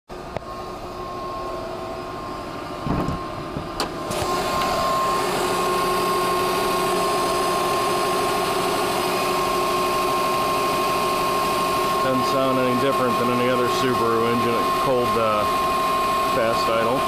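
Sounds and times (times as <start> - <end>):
thin whine: 0.1 - 7.6
low thump: 2.8 - 3.8.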